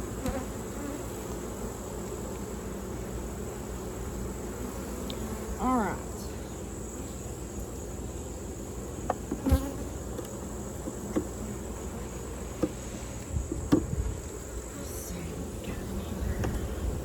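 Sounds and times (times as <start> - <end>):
honeybees buzzing: 0.0 - 17.0
knocks of hive equipment: 9.0 - 11.4, 12.6 - 12.8, 13.5 - 14.0.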